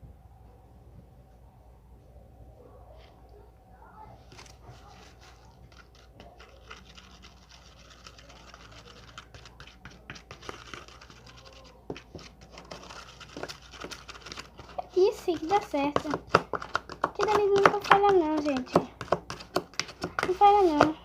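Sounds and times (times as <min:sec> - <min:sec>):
scratching and clicks of handled objects: 0:04.2 - 0:21.0.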